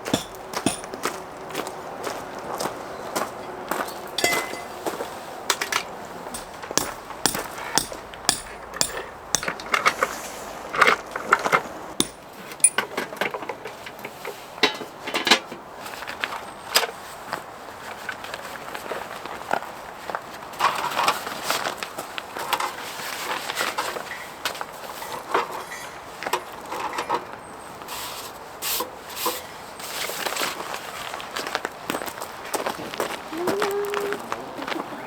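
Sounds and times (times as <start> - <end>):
hard objects clattering: 0.1 - 1.1, 5.5 - 10.0, 12.0 - 13.0.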